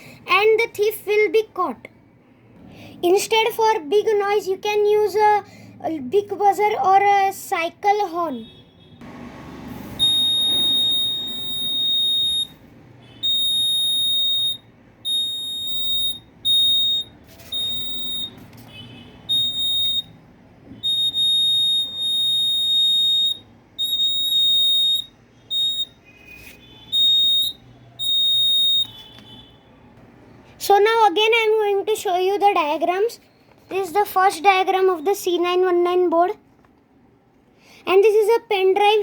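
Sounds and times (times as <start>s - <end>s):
alarm buzzer beeping: 9.9s - 20.2s, 20.8s - 29.6s.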